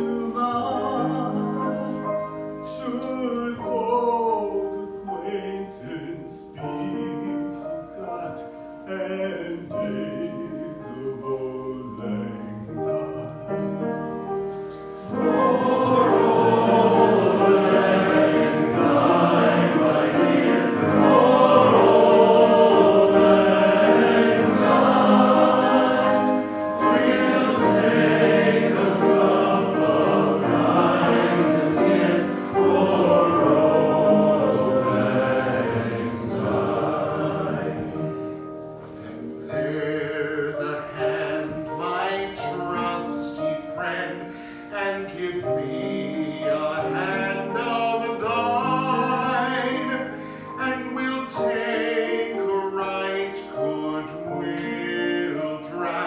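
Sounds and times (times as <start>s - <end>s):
choir singing: 0.0s - 56.0s
musical accompaniment: 0.0s - 56.0s.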